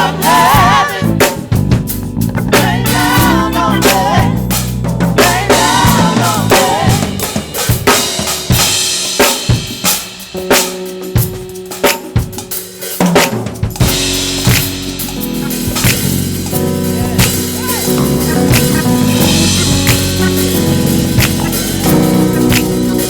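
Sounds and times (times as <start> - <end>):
person singing: 0.0 - 1.4, 2.5 - 4.4, 5.2 - 7.2
bass and organ notes: 0.0 - 8.9, 13.8 - 23.0
drum kit playing: 0.0 - 23.0.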